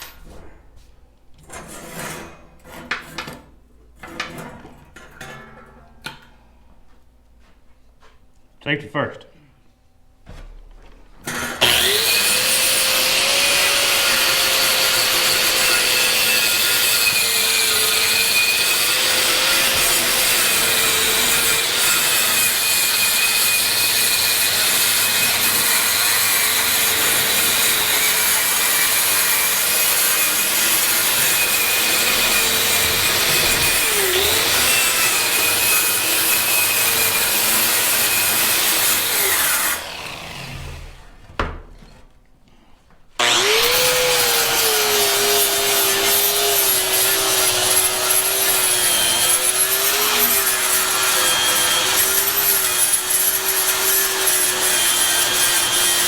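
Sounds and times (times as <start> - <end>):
wire wheel scrubbing steel: 11.6 - 40.0, 43.2 - 56.0.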